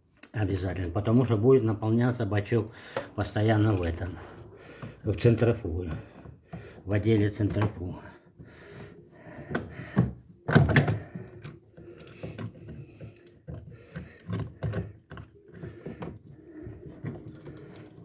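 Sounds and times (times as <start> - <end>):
clicks and knocks of machine parts: 9.4 - 18.0.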